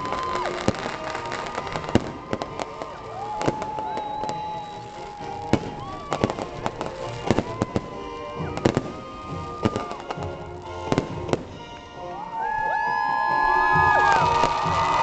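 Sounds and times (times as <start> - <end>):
fireworks bangs and crackles: 0.0 - 12.0, 13.8 - 15.0.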